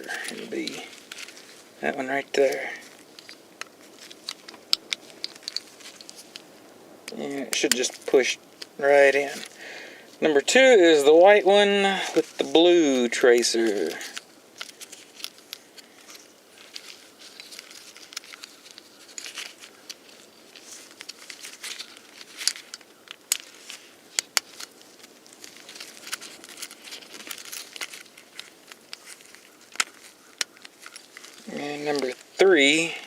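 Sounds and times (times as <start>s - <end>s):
wire rustling: 0.0s - 33.0s.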